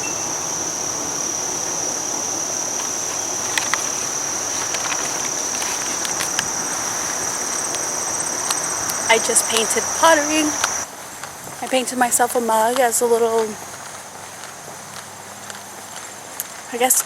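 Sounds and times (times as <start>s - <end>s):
crickets chirping: 0.0s - 17.0s
faint ticks: 12.7s - 17.0s.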